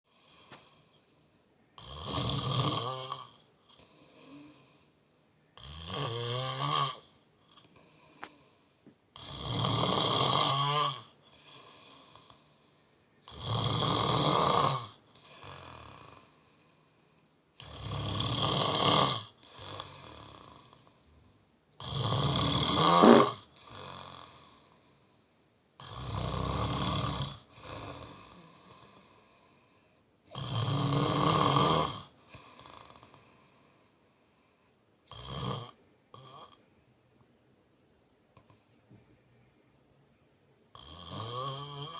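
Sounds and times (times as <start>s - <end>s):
person snoring: 0.1s - 1.0s, 1.8s - 21.1s, 21.8s - 25.1s, 25.8s - 36.8s, 40.7s - 41.9s
faint breath: 0.1s - 1.7s, 3.7s - 5.6s, 7.5s - 9.1s, 11.2s - 13.3s, 16.2s - 17.4s, 27.6s - 30.2s, 32.2s - 35.0s.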